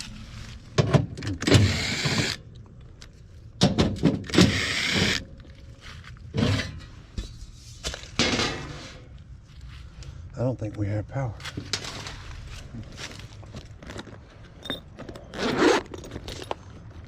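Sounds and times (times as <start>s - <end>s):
cordless drill whirring: 1.4s - 2.4s, 4.3s - 5.2s.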